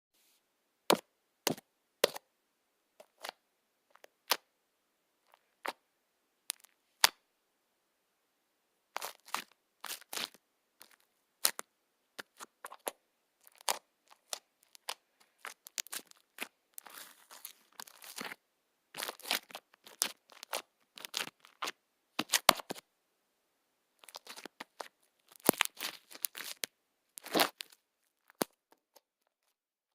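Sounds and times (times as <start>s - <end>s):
doll crackling and crunching clicks: 12.2s - 18.4s, 19.0s - 22.8s, 24.0s - 29.6s.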